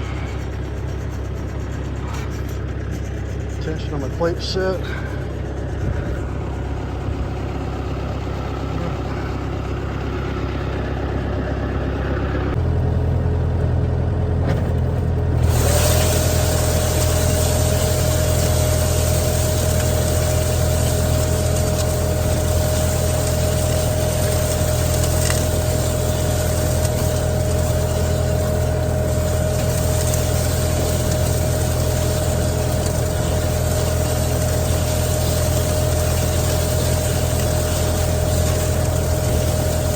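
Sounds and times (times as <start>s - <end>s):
steady whine: 0.0s - 12.8s, 15.4s - 39.9s
tractor engine running: 0.0s - 39.9s
broad hiss: 15.5s - 39.9s.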